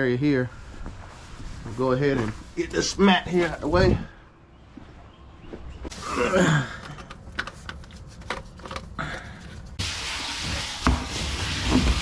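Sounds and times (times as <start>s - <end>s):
steady hiss: 9.8s - 12.0s.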